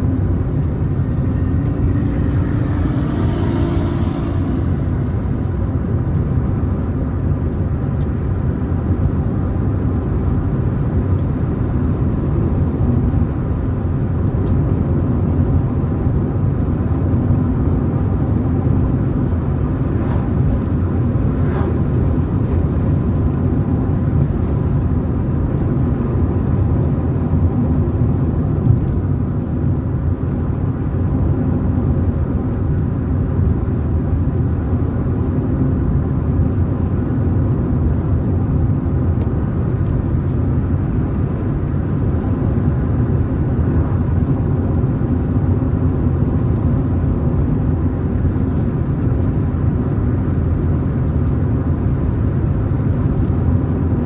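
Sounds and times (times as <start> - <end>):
car driving on road: 0.0 - 54.0.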